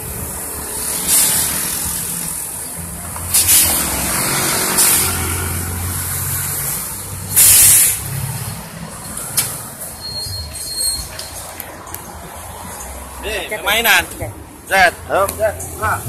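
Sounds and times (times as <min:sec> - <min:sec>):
heavy vehicle engine running: 0:00.0 - 0:12.9
air-brake release hiss: 0:00.9 - 0:01.9, 0:03.3 - 0:03.9, 0:04.8 - 0:05.1, 0:07.3 - 0:08.2.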